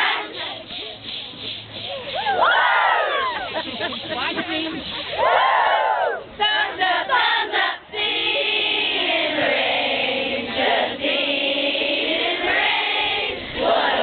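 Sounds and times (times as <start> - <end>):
group of voices singing: 0.0 - 0.9, 6.4 - 14.0.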